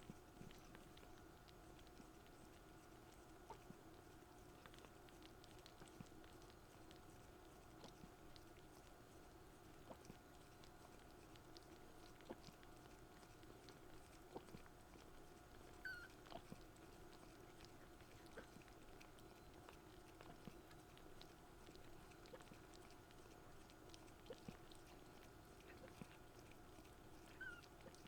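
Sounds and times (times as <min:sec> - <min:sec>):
kitten squeak: 0:15.8 - 0:16.1, 0:27.4 - 0:27.6.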